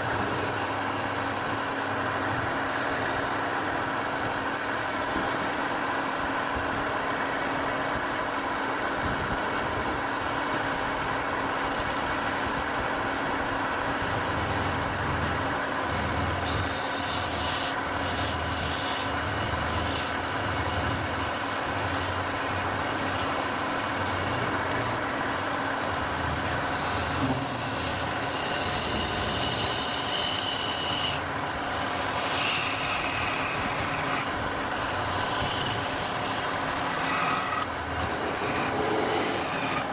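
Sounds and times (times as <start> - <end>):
wood lathe motor running: 0.0 - 39.9
turning tool scraping wood: 14.2 - 39.9.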